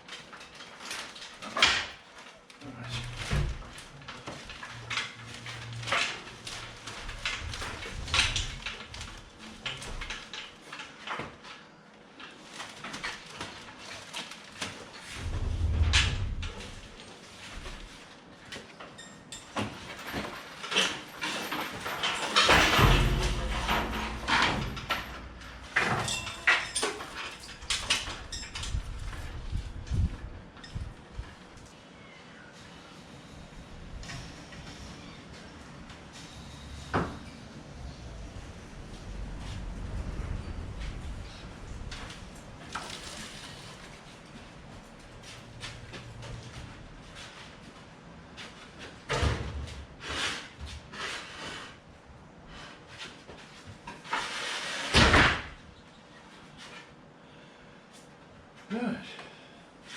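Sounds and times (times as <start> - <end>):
heavy machine knocking and creaking: 2.9 - 10.8, 15.0 - 17.9, 19.3 - 31.3, 35.9 - 47.4
low rumble: 15.2 - 17.0, 36.4 - 42.7.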